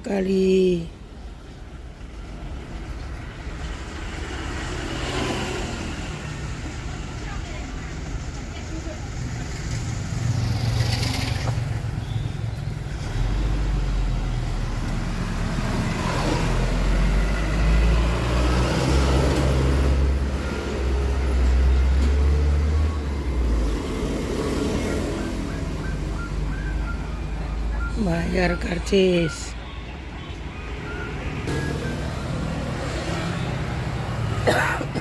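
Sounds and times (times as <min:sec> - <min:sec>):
road traffic passing: 0:00.0 - 0:35.0
heavy vehicle engine drone: 0:12.8 - 0:35.0.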